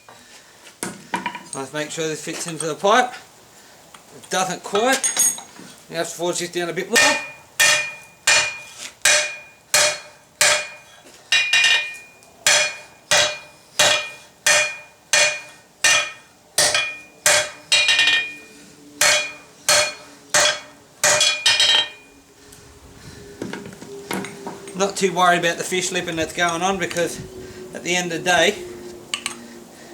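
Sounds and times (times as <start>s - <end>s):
hammer blows on anvil: 7.0s - 22.1s.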